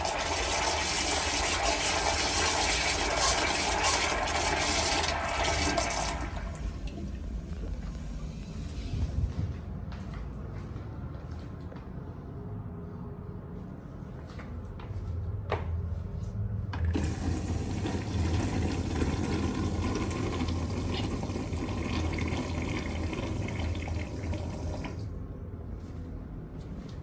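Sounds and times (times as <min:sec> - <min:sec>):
toilet flushing: 0:00.0 - 0:08.7, 0:16.8 - 0:25.2.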